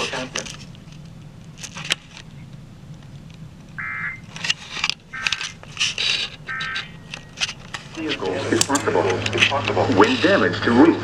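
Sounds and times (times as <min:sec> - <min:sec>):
radio static crackle: 0:00.0 - 0:11.0
steady low hum: 0:00.0 - 0:11.0
two-tone digital data squawks: 0:03.8 - 0:04.3, 0:05.1 - 0:05.6, 0:06.5 - 0:07.4.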